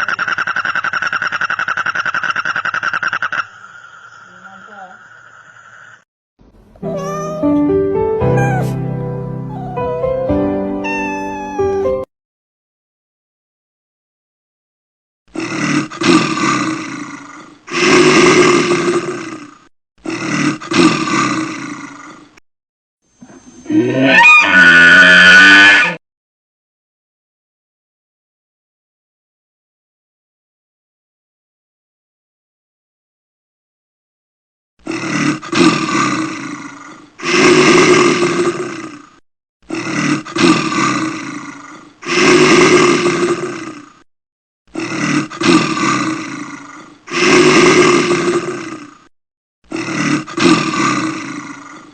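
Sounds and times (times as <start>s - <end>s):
big cat roaring: 34.9s - 44.0s, 44.7s - 49.1s, 49.7s - 51.9s.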